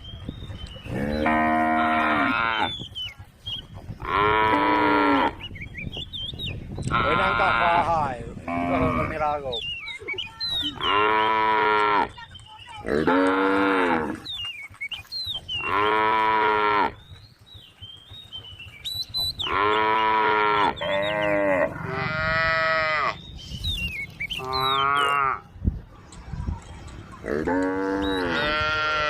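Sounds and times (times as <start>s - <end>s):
cattle mooing: 0.9s - 2.7s, 6.9s - 7.8s, 8.4s - 9.3s, 12.8s - 14.2s, 15.6s - 17.0s, 19.5s - 23.2s, 24.4s - 25.4s, 27.2s - 29.0s.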